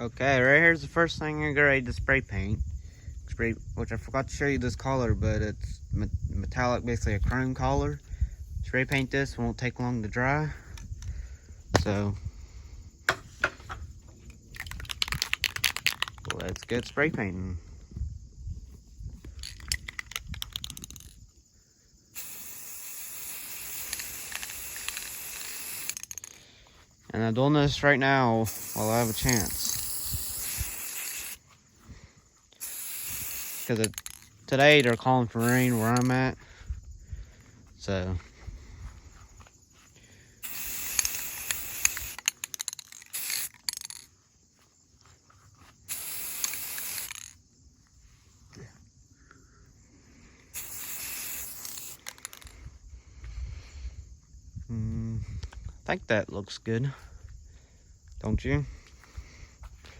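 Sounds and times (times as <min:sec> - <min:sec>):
spray paint can hissing: 0:14.6 - 0:16.4, 0:19.4 - 0:21.1, 0:22.1 - 0:26.4, 0:28.4 - 0:31.5, 0:32.5 - 0:36.2, 0:40.4 - 0:44.0, 0:45.9 - 0:47.4, 0:50.5 - 0:52.6
sputtering spray spurts: 0:22.1 - 0:26.7, 0:28.0 - 0:36.3, 0:40.4 - 0:44.0, 0:45.8 - 0:47.3, 0:50.5 - 0:52.6.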